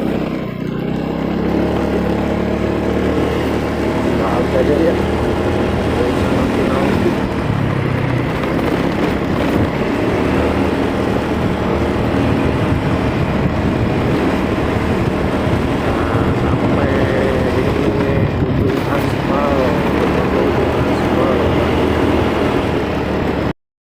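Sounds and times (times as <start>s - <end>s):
motorcycle engine running: 0.0s - 23.5s
wind noise on microphone: 5.0s - 23.5s.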